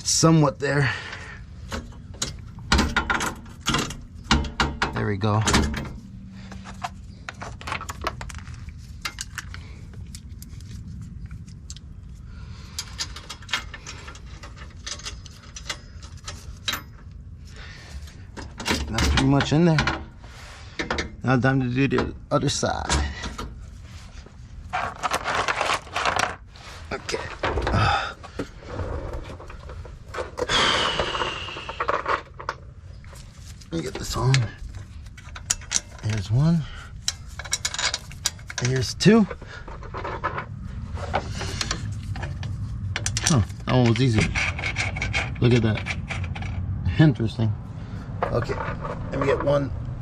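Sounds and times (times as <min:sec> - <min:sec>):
metal hardware clicking and clinking: 0:01.7 - 0:09.6, 0:12.6 - 0:17.2, 0:31.8 - 0:40.5
metal scrape: 0:37.0 - 0:46.6.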